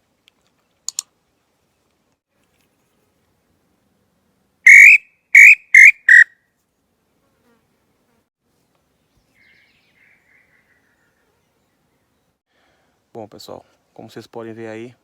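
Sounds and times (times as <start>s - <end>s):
faint whistle: 4.7s - 6.3s
wooden bird call whistling: 4.7s - 6.3s.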